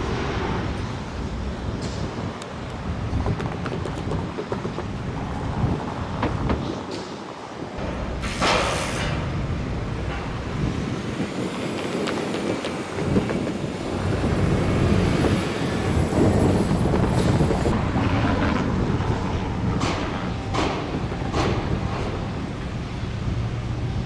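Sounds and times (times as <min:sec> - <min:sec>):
vehicles passing rumble: 0:00.0 - 0:24.0
short hiss: 0:08.2 - 0:09.2.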